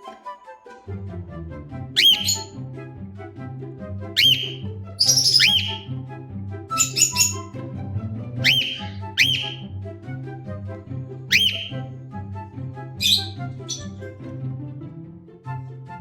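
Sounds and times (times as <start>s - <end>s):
background music: 0.0s - 16.0s
cockatiel chirping: 2.0s - 2.5s, 4.2s - 5.8s, 6.8s - 7.5s, 8.4s - 9.6s, 11.3s - 11.8s, 13.0s - 14.0s.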